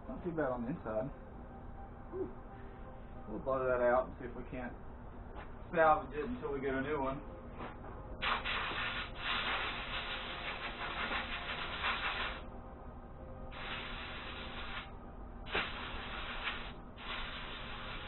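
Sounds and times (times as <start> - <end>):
compressed air hissing blasts: 8.2 - 12.4, 13.5 - 14.9, 15.5 - 18.0.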